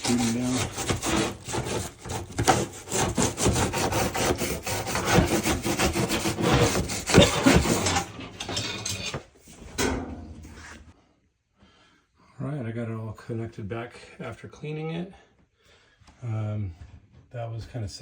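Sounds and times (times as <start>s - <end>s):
rubbing and scraping in vent duct: 0.0s - 9.8s, 10.4s - 11.0s.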